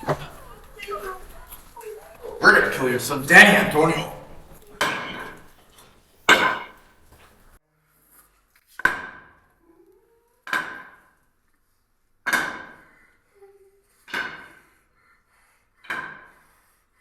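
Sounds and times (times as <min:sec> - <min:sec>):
sharp ringing knocks: 0:02.4 - 0:05.5, 0:06.3 - 0:06.8.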